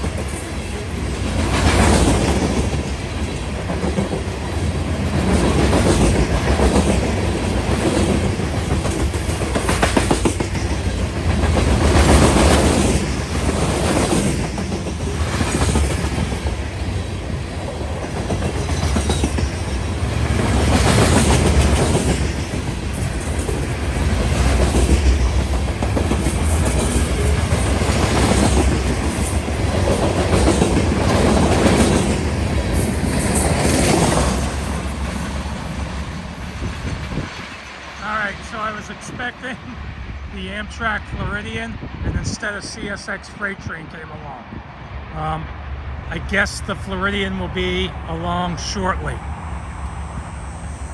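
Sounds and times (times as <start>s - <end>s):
train wheels clacking on rail joints: 0.0s - 40.3s
low train rumble: 0.0s - 50.9s.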